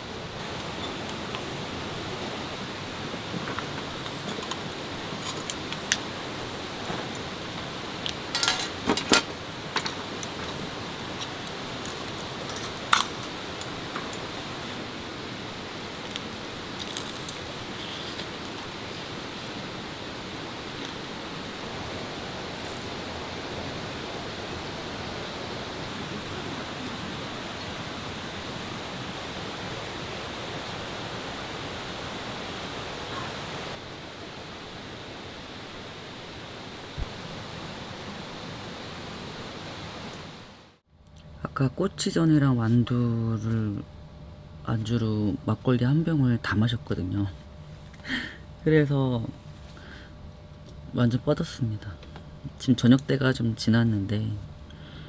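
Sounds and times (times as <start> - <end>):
steady rainfall: 0.0 - 40.8.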